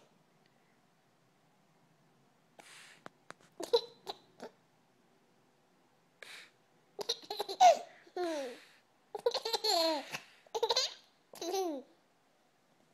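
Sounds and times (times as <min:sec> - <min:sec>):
baby laughing: 0:03.6 - 0:04.6, 0:07.0 - 0:11.9.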